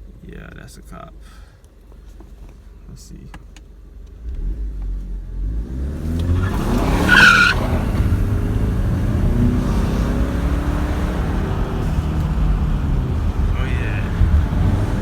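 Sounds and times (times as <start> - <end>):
car engine accelerating hard: 4.1 - 15.0
tyres squealing: 6.2 - 15.0.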